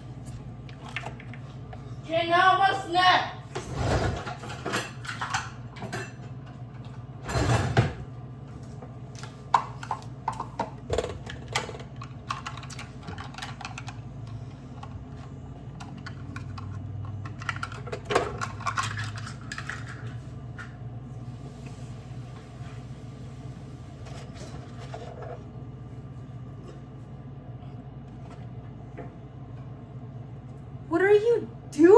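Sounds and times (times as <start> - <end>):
steady low hum: 0.0 - 31.9
kitchen utensils clattering: 3.6 - 6.3, 7.2 - 8.0, 16.1 - 20.2.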